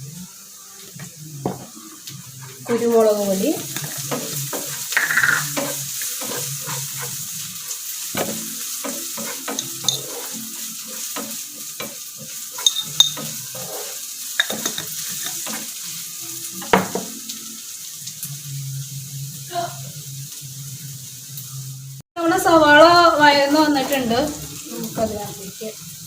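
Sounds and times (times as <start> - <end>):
onions sizzling in a pan: 0.0 - 26.0
utensil scraping a pan: 3.6 - 15.7, 23.5 - 24.4.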